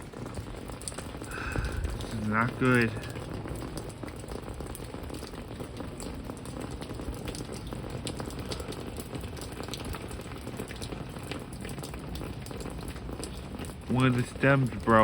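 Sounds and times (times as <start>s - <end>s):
heavy rain falling: 0.0s - 15.0s
sharp raindrop hits: 0.0s - 15.0s
gusting wind rumble: 1.3s - 2.5s.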